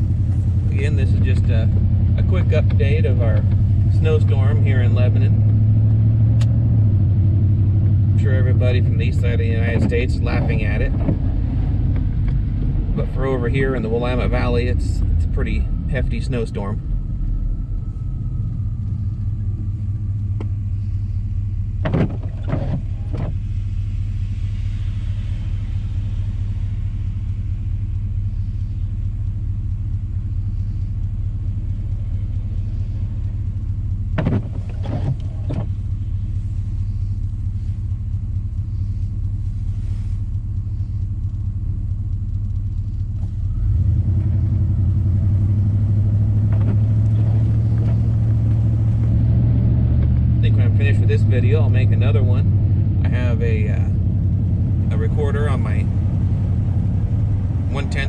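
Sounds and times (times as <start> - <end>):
pickup engine and road drone: 0.0 - 58.0.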